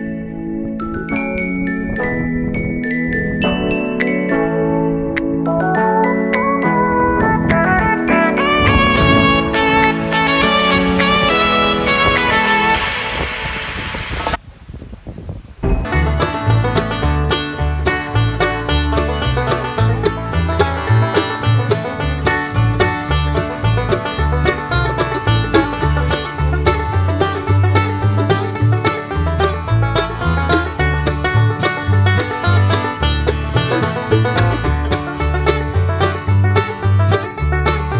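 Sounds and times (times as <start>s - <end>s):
upbeat bluegrass music: 15.7s - 37.9s.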